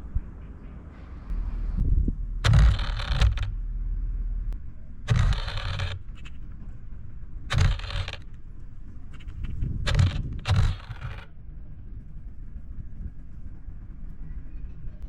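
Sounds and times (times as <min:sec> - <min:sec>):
rattling bursts: 0:01.3 - 0:11.6.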